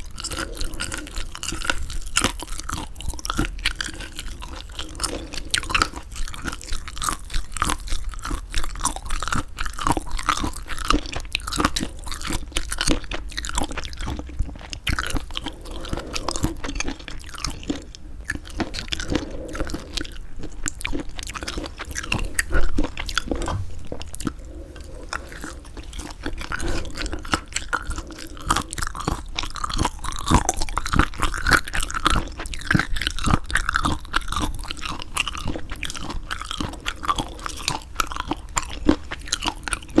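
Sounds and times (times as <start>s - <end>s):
chewing squid: 0.0s - 40.0s
loud knock: 23.4s - 24.2s.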